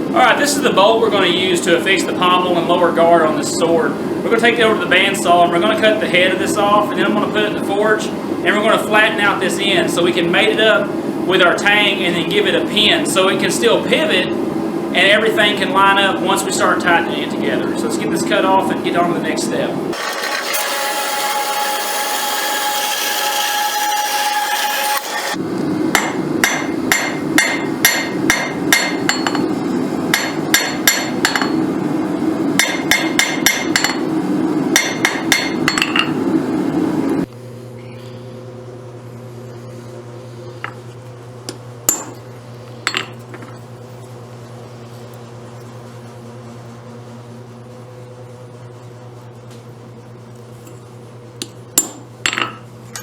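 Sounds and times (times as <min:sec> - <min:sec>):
bandsaw cutting steel: 0:19.9 - 0:25.4
hammer striking on anvil: 0:25.9 - 0:29.5, 0:30.1 - 0:31.6, 0:32.6 - 0:34.1, 0:34.8 - 0:36.2, 0:41.9 - 0:42.2, 0:51.4 - 0:52.6.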